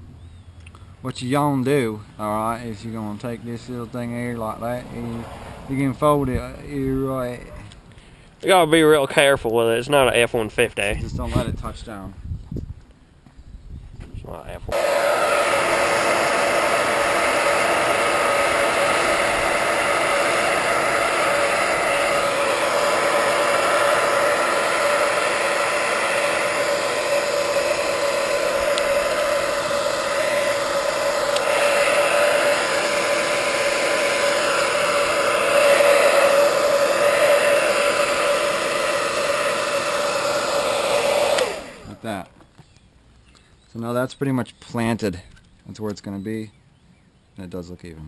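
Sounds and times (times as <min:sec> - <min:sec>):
hot-air blower running: 0:14.7 - 0:42.3.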